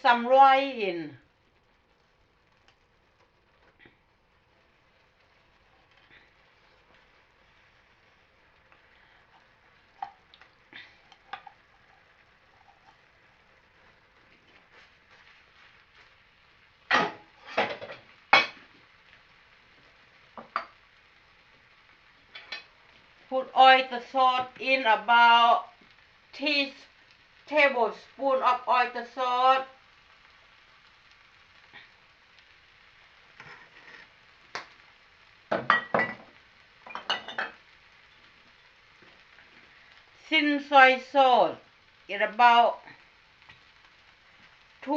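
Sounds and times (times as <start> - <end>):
utensil knocking on frying pan: 20.4 - 20.8, 35.5 - 36.3.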